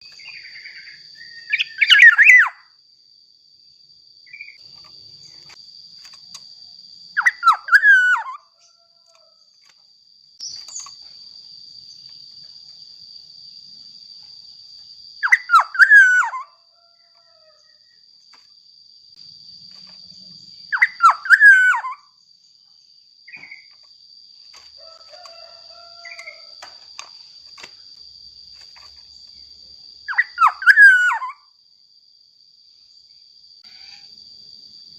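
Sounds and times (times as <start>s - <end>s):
bird fluting whistled phrases: 0.3s - 2.6s, 7.2s - 8.4s, 15.2s - 16.5s, 20.7s - 22.0s, 30.1s - 31.4s.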